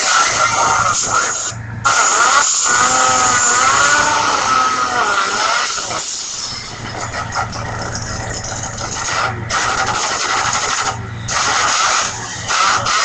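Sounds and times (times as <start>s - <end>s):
engine ringtone: 5.8s - 9.6s, 10.8s - 11.4s.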